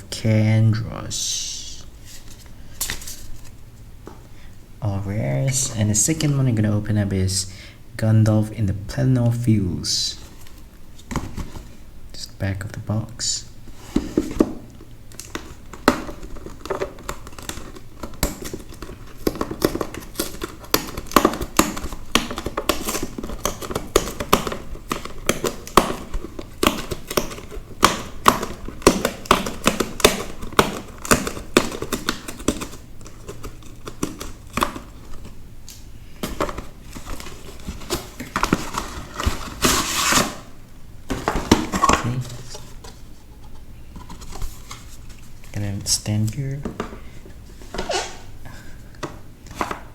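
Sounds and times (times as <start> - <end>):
box clicks and taps: 15.1 - 35.1
plastic wrapping crinkling: 15.1 - 45.6.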